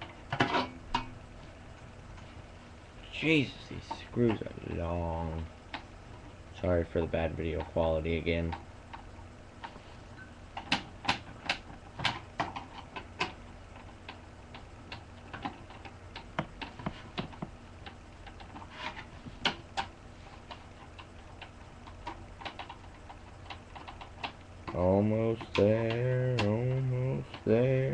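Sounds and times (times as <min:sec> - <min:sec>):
steady low hum: 0:00.0 - 0:27.9.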